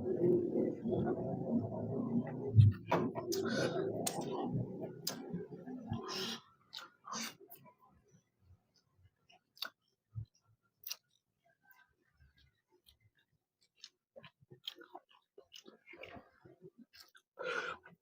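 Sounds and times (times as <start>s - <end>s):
chewing with wet mouth smacks: 2.6s - 7.6s, 9.3s - 18.0s.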